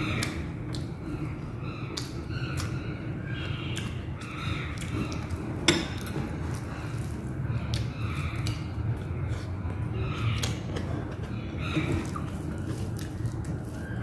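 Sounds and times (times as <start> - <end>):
chewing: 3.5 - 14.0.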